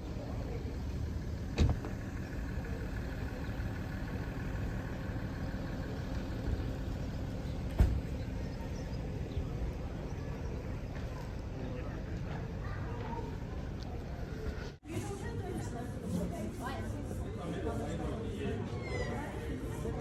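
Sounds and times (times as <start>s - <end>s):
vehicle engine rumble: 0.0s - 20.0s.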